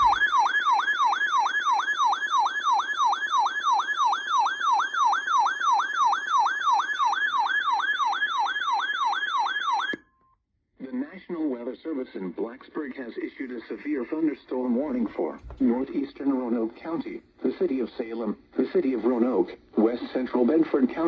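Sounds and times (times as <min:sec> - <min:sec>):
electronic siren yelping: 0:00.0 - 0:10.0.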